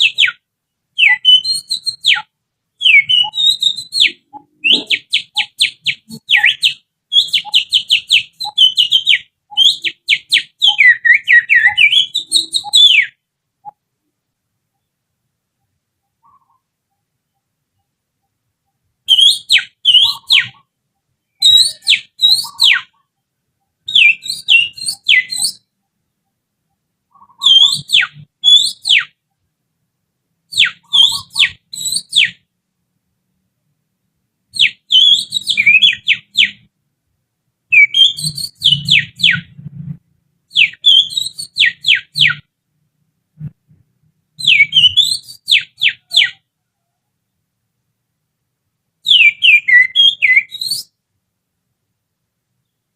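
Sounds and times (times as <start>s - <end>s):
finger whistling bird imitation: 1.0s - 13.8s, 19.1s - 20.6s, 21.3s - 23.0s, 23.9s - 25.7s, 27.2s - 29.2s, 30.5s - 32.4s, 34.5s - 36.6s, 37.7s - 39.8s, 40.5s - 42.5s, 44.4s - 46.4s, 49.1s - 50.9s.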